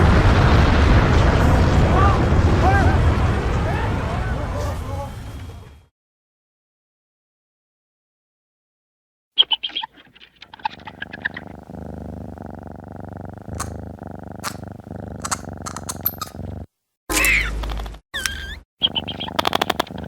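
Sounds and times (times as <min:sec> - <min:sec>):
low rumbling monster growl: 0:11.2 - 0:16.7
monster chirps and clicks: 0:13.6 - 0:13.8, 0:14.4 - 0:14.6, 0:15.2 - 0:16.4, 0:17.1 - 0:20.0.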